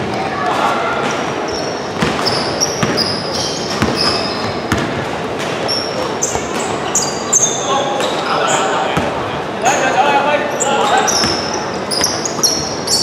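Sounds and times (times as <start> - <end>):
hubbub of the hall: 0.0 - 13.0
sneakers squeaking on floor: 1.0 - 13.0
basketball bouncing on hardwood: 2.0 - 3.1, 3.7 - 5.0.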